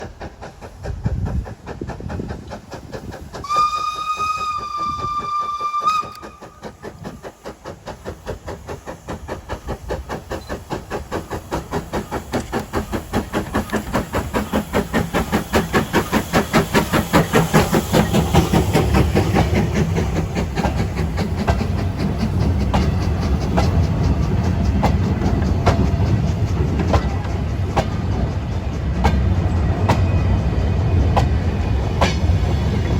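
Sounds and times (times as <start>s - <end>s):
steam exhaust beats: 0.0s - 32.9s
steam locomotive whistle: 3.4s - 6.8s.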